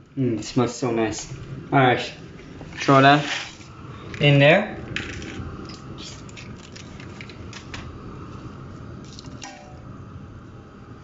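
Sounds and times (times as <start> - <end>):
gas burner rumble: 0.0 - 11.0.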